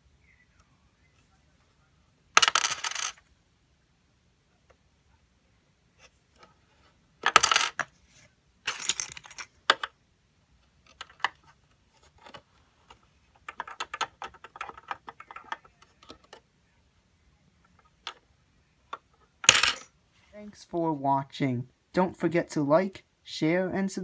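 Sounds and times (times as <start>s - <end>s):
coin clattering: 2.4s - 3.2s, 7.2s - 7.9s, 8.6s - 9.9s, 19.4s - 19.9s
plastic bricks clacking and rattling: 8.7s - 9.9s, 13.4s - 16.3s.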